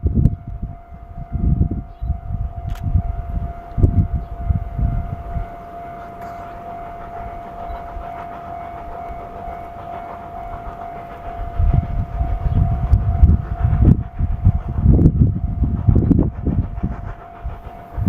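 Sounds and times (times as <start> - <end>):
steam locomotive chuffing: 0.0 - 18.0
level crossing warning signal: 0.2 - 14.3.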